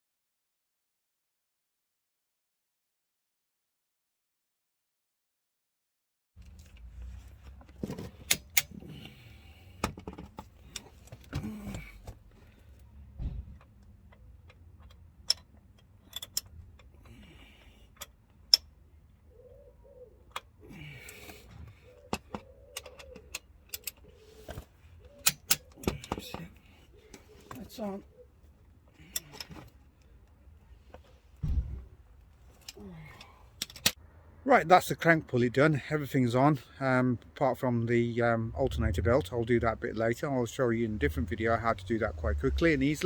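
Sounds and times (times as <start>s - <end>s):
hand tools clicking on metal: 13.7s - 18.7s, 20.3s - 27.6s, 32.5s - 34.0s
bird cooing: 19.2s - 26.0s, 26.7s - 28.4s.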